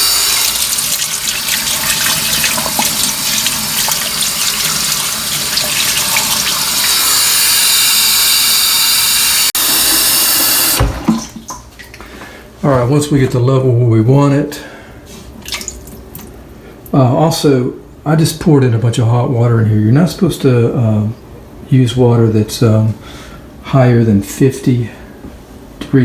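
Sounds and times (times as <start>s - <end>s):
faucet water pouring into tub: 0.0s - 12.0s.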